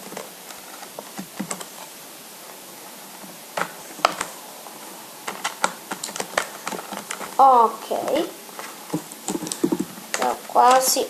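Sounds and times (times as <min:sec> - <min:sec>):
plastic pens clicking and tapping: 0:05.3 - 0:07.4, 0:08.9 - 0:10.9.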